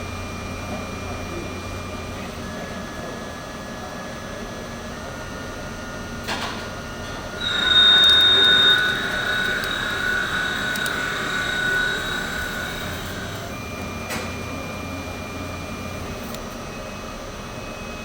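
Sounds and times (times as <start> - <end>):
lathe humming and whining: 7.0 - 17.1.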